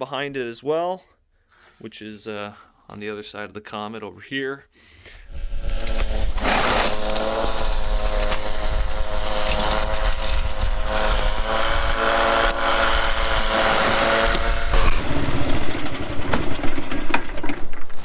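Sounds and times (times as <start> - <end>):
snowblower engine running: 5.3 - 18.0.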